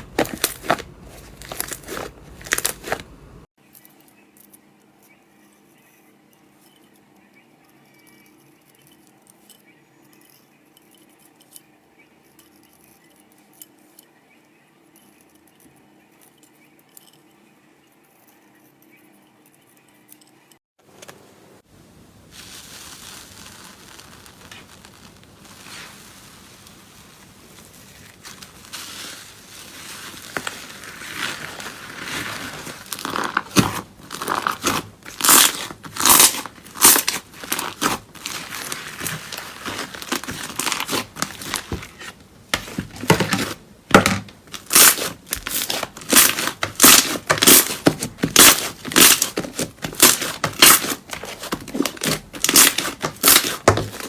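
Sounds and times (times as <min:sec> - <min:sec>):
slime crackling and popping: 0:00.0 - 0:03.4, 0:22.2 - 0:41.9, 0:44.0 - 0:54.0.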